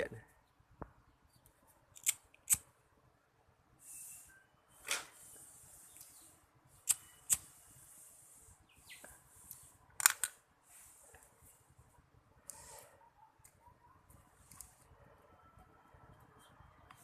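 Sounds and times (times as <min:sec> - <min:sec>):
scraping hiss of wire stripping: 0:02.0 - 0:02.6, 0:06.8 - 0:08.5, 0:12.4 - 0:12.8.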